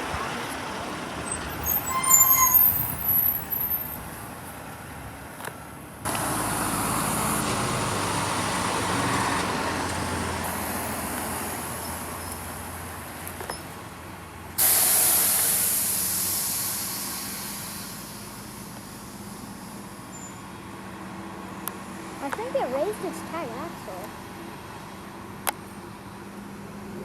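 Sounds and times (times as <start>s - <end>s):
diesel engine running: 0.0s - 27.0s
air brake hissing: 1.5s - 3.9s, 14.6s - 20.4s.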